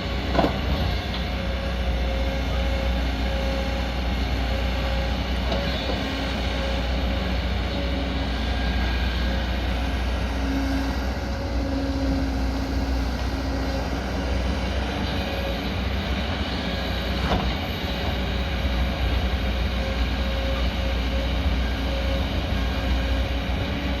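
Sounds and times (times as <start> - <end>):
diesel engine rumble: 0.0 - 24.0
engine whine: 0.0 - 24.0.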